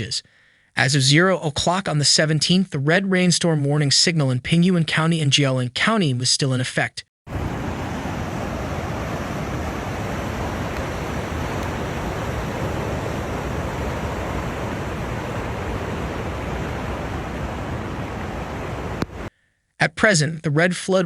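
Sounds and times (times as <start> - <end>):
heavy water rushing: 7.3 - 19.3.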